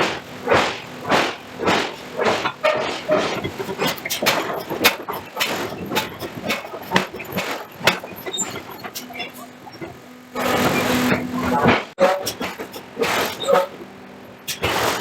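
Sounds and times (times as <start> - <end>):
forging hammer striking metal: 0.0 - 9.8.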